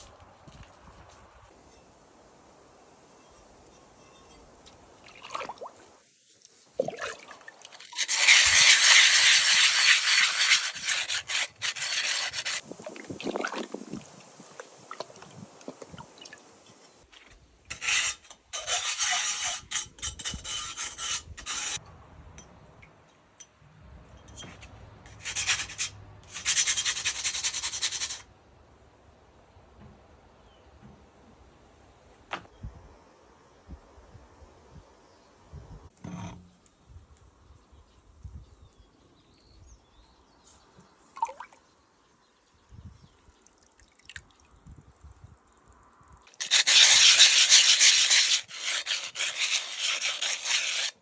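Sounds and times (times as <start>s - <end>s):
pottery being sanded: 8.0s - 12.6s, 17.7s - 21.8s, 25.1s - 28.2s, 46.4s - 51.0s.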